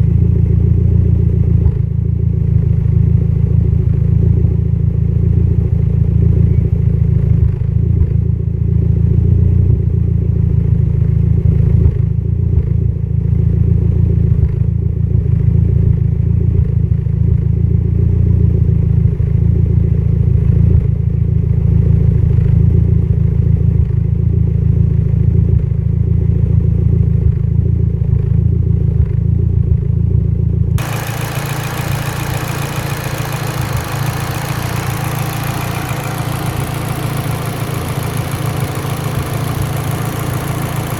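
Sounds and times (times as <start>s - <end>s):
car engine idling unevenly: 30.3s - 40.9s.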